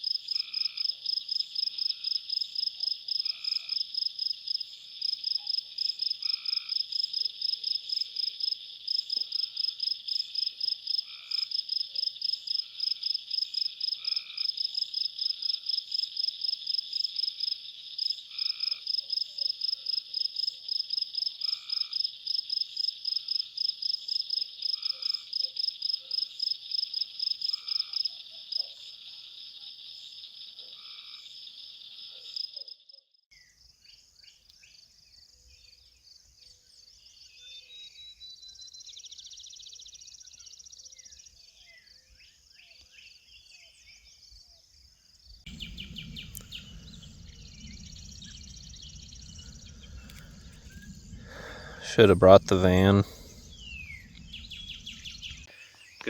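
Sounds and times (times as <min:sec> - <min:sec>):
insects chirping: 0:00.0 - 0:32.6, 0:44.2 - 0:56.0
frogs croaking: 0:00.1 - 0:32.8, 0:45.5 - 0:55.8.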